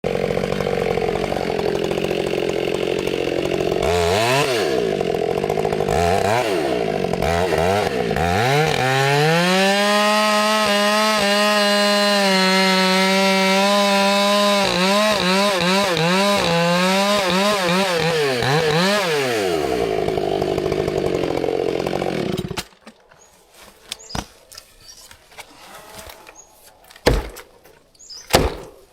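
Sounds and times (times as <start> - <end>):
chainsaw idling and revving: 0.0 - 23.0
chainsaw cutting wood: 0.0 - 28.9.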